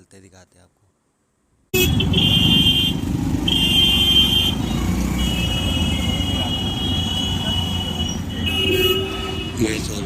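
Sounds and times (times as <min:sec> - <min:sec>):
traffic rumble and road noise: 0:00.0 - 0:10.0.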